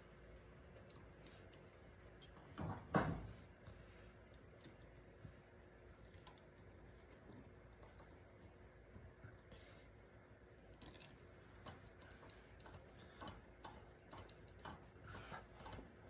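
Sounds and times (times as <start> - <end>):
low steady hum: 0.0 - 16.0.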